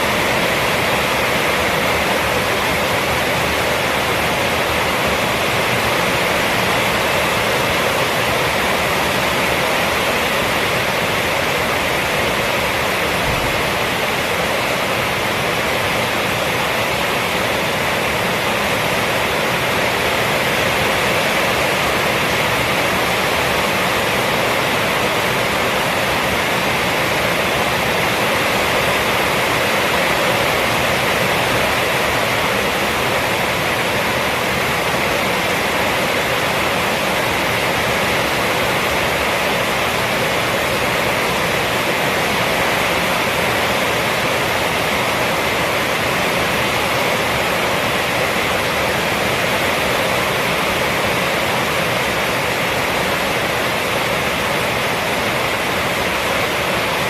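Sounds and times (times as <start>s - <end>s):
rain falling on a roof: 0.0s - 57.0s.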